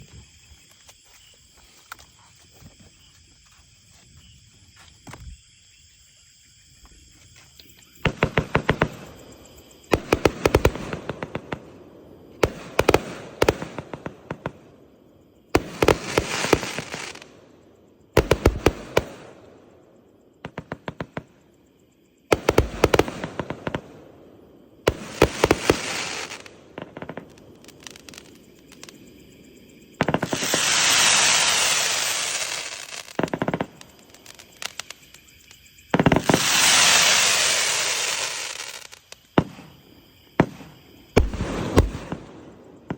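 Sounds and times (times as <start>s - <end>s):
fireworks launch shots and bursts: 7.9s - 14.9s, 15.5s - 19.8s, 20.4s - 21.4s, 22.3s - 29.0s, 29.9s - 35.3s, 35.9s - 42.9s
hissing crackling fireworks bursts: 7.9s - 21.4s, 22.2s - 42.9s.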